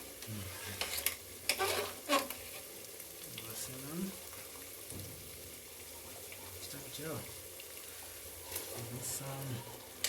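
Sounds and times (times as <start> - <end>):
beans sizzling: 0.0 - 10.0
spoon scraping pot: 0.6 - 2.7.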